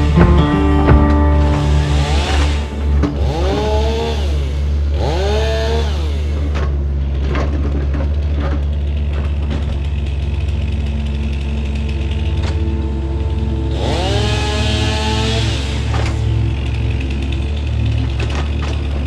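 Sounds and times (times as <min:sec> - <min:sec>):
heavy machine engine running: 0:08.8 - 0:19.0.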